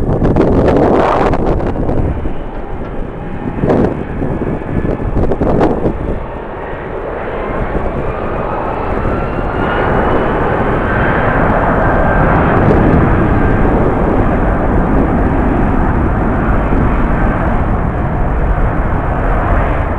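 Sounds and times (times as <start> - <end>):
engine whine rising in pitch: 0.0 - 15.4
jet engines roaring: 0.0 - 19.9
wind buffeting microphone: 0.0 - 19.9.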